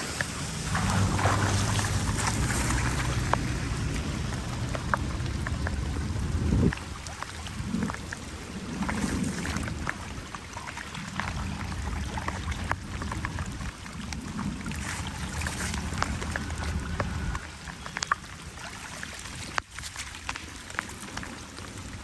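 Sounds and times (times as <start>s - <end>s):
flood water running and gurgling: 0.0s - 22.0s
small splashes and clicks: 0.0s - 22.0s
low rumble: 0.2s - 10.4s, 11.1s - 18.4s.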